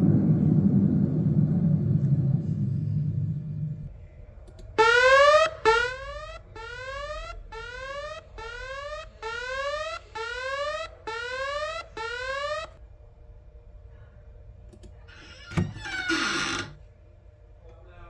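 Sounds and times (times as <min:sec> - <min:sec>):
rising whooping alarm tones: 0:04.8 - 0:12.8.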